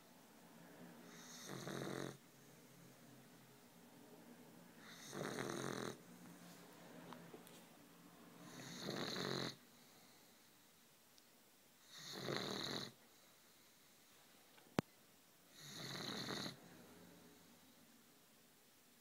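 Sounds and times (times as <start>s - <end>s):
puppy snoring: 1.0s - 2.2s, 4.8s - 6.0s, 8.4s - 10.0s, 11.8s - 13.0s, 15.5s - 16.6s
soft breathing: 9.6s - 10.9s.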